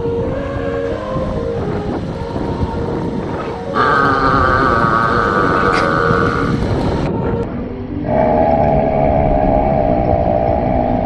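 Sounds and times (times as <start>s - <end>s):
man burping: 3.8s - 6.6s.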